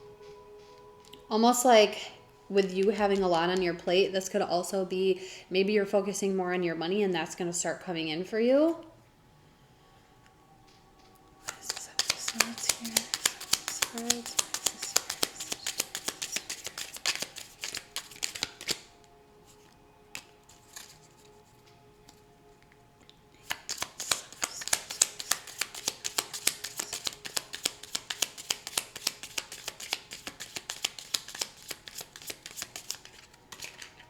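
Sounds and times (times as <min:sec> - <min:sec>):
faint background music: 0:00.0 - 0:34.0
cards being shuffled: 0:11.4 - 0:22.2, 0:23.4 - 0:34.0
single card clicks: 0:11.5 - 0:18.8.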